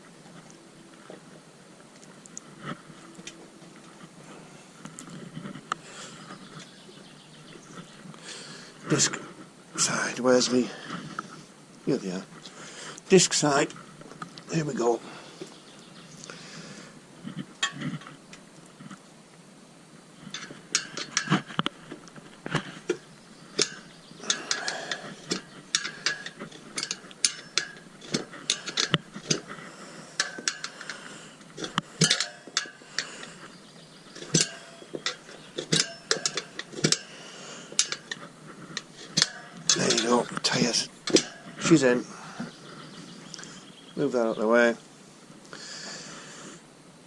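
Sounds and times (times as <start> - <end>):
metal scraping: 20.2 - 42.9
metallic clinks and knocks: 22.9 - 29.5, 30.2 - 31.0, 31.6 - 33.2, 34.0 - 41.7.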